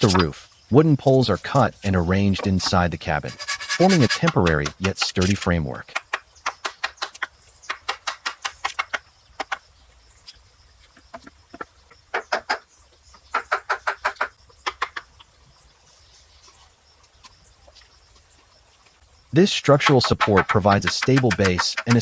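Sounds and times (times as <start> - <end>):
hand tool striking wooden pole: 0.0 - 0.3, 1.6 - 5.4, 19.8 - 22.0.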